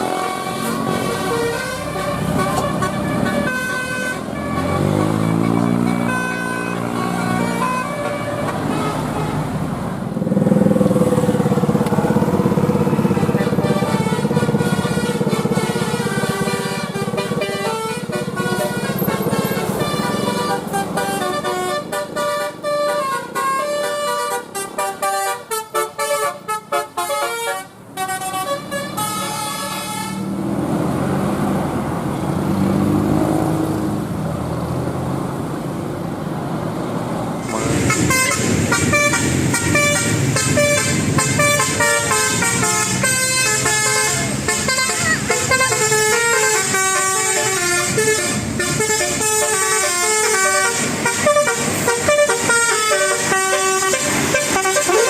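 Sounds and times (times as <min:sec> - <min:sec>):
bus air horns playing melody: 0:00.0 - 0:09.7, 0:11.1 - 0:30.4, 0:37.4 - 0:55.0.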